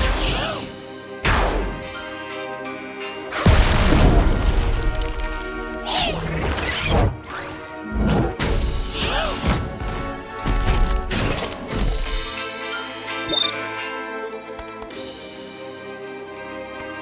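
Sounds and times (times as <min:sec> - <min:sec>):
loud crash: 0:03.4 - 0:05.9.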